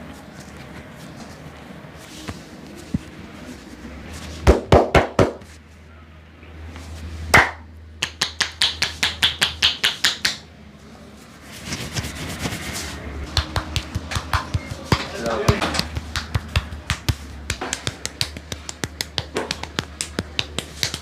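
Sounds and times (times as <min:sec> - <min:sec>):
hands rubbing with light taps: 0:00.4 - 0:04.4, 0:11.5 - 0:21.0
hands slapping and chopping on body: 0:04.5 - 0:05.4, 0:07.4 - 0:10.4, 0:13.3 - 0:21.0.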